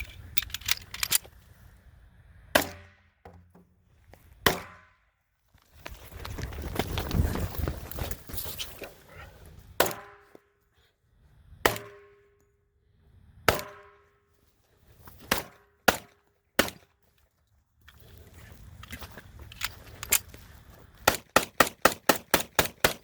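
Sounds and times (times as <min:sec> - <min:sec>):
handling rustle: 0:00.0 - 0:01.8, 0:05.4 - 0:09.8, 0:16.8 - 0:21.1.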